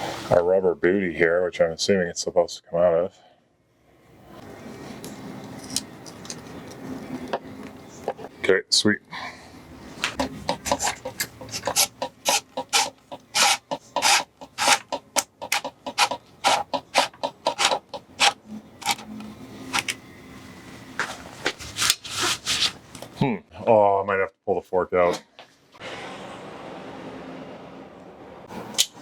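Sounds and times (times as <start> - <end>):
rasping rubbing strokes: 10.2 - 19.8.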